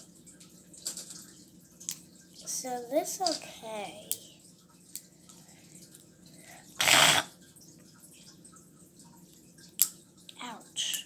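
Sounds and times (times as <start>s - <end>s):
person sneezing: 6.8s - 7.3s.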